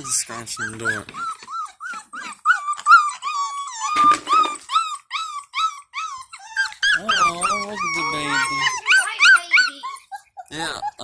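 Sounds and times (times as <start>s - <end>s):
puppies wailing: 0.0s - 11.0s
puppies whimpering: 0.0s - 11.0s.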